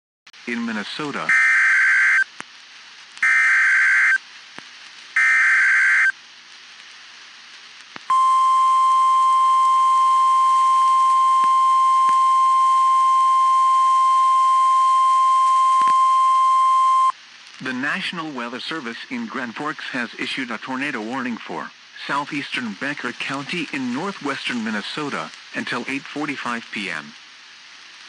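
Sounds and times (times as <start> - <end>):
screechy digital header tones: 1.3 - 2.2, 3.2 - 4.2, 5.2 - 6.1, 8.1 - 17.1
steady warning alarm tone: 5.2 - 6.1.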